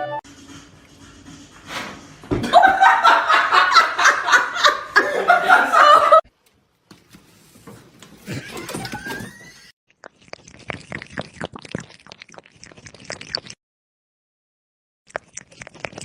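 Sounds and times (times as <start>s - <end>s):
person laughing: 2.4s - 6.2s, 8.2s - 9.7s.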